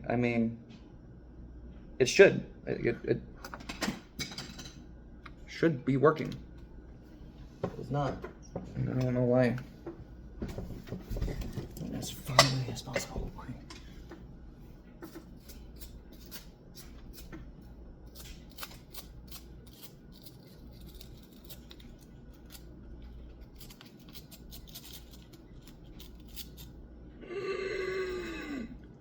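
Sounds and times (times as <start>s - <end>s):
person groaning: 27.2s - 28.9s.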